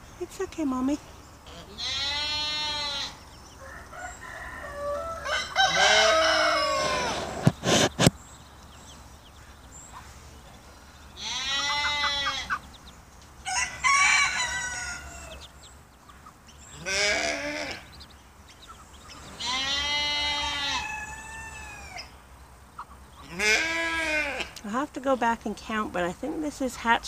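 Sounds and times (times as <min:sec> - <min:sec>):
rooster crowing: 0:02.3 - 0:07.4, 0:13.4 - 0:15.5, 0:19.5 - 0:22.1.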